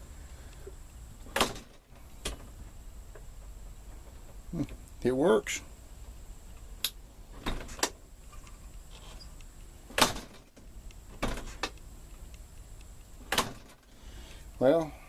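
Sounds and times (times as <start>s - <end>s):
door latch clicking: 1.3s - 2.4s, 9.9s - 10.5s, 13.2s - 13.8s.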